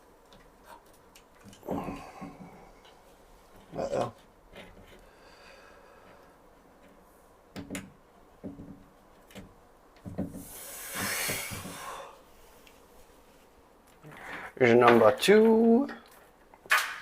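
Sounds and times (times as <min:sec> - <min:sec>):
handling knocks and clicks: 0:06.1 - 0:10.4
rustling hiss: 0:10.0 - 0:15.4.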